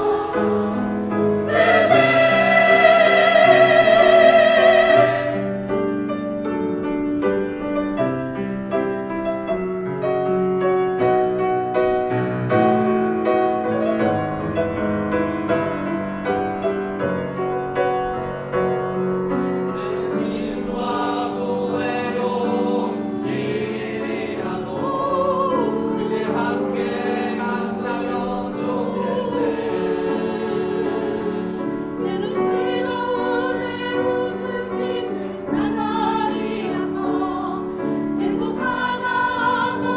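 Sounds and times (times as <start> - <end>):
choir singing: 0.0 - 6.3, 19.3 - 39.9
piano accompaniment: 0.0 - 39.9.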